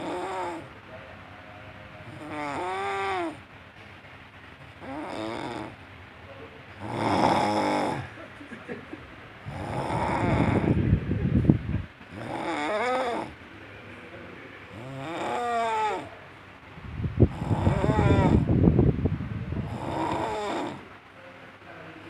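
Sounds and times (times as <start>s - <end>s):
man snoring loudly: 0.0s - 0.7s, 2.0s - 3.4s, 4.8s - 5.8s, 6.8s - 8.1s, 9.5s - 10.8s, 12.1s - 13.4s, 14.7s - 16.1s, 17.3s - 18.5s, 19.6s - 20.8s.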